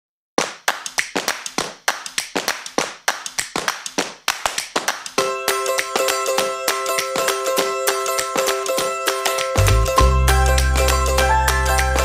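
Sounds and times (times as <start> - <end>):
sharp irregular taps: 0.4 - 7.6
plucked string music: 5.2 - 12.0.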